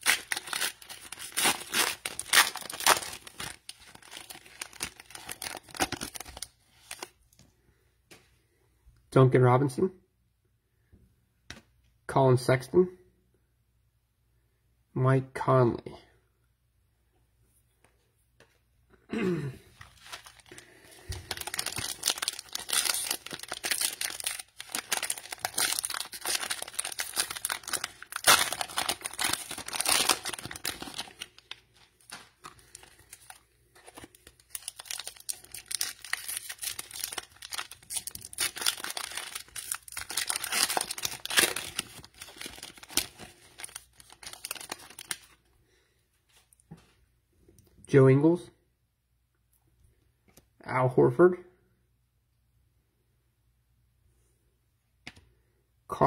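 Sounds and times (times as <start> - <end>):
cellophane tearing and crumpling: 0.0 - 7.2, 19.9 - 45.4.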